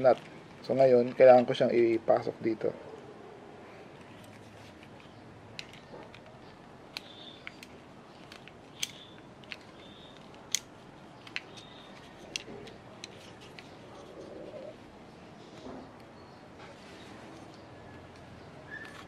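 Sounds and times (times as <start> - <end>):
small metal parts clinking: 4.1 - 13.8.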